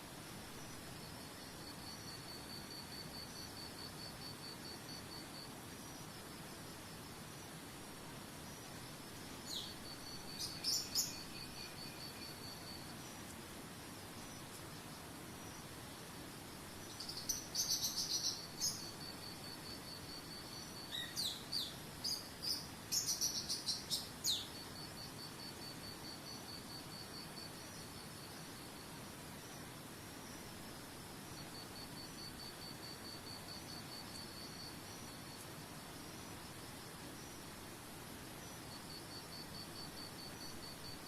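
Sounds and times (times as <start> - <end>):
running water hiss: 0.0 - 41.0
small birds chirping: 8.4 - 13.5, 16.8 - 24.7.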